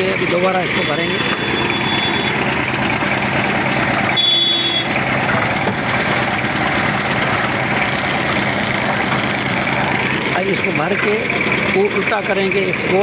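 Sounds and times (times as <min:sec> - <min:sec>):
concrete mixer running: 0:00.0 - 0:13.0
short high beep: 0:00.8 - 0:02.3.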